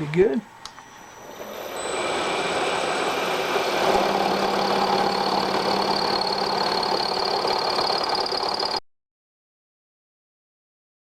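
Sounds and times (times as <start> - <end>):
milling machine cutting metal: 1.2 - 8.8.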